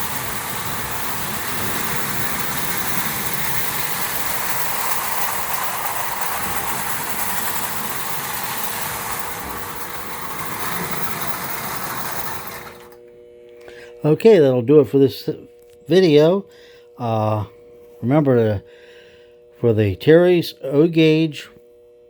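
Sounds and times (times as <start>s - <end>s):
toy trains rattling on track: 0.0s - 13.0s.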